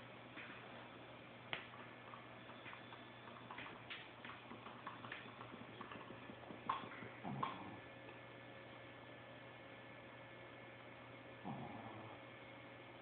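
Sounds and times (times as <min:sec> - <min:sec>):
steady low hum: 0:00.0 - 0:13.0
dog snoring: 0:05.8 - 0:07.9, 0:11.4 - 0:12.3.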